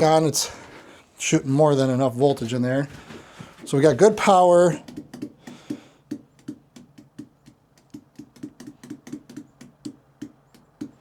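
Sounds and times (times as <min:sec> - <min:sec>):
light clicks or taps: 0:04.8 - 0:11.0.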